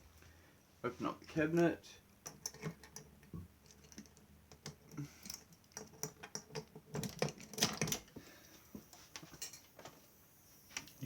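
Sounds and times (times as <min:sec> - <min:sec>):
metal cabinet clicks and rattles: 0:05.9 - 0:08.1.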